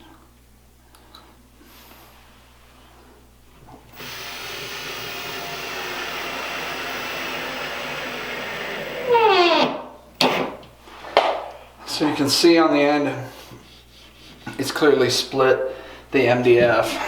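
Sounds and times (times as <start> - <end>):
drill motor driving screw: 3.9 - 10.5.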